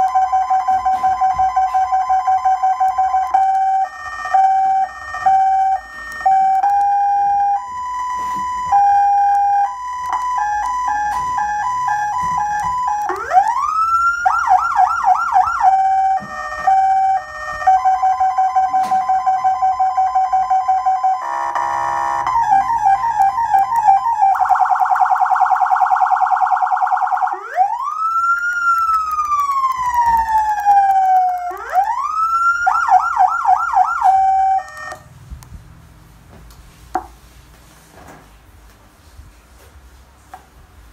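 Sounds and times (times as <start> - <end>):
electronic siren cycling tones: 0.0 - 35.1.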